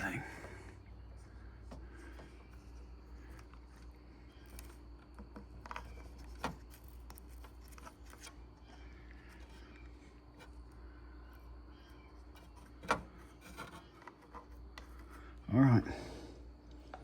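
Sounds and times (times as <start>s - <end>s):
low steady hum: 0.0s - 17.0s
clicks and scraping of parts: 12.3s - 15.1s.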